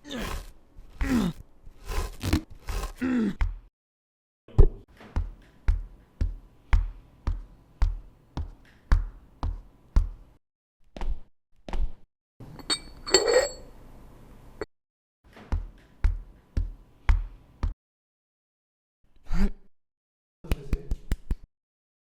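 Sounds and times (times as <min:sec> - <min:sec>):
footsteps with low thuds: 0:05.2 - 0:10.4.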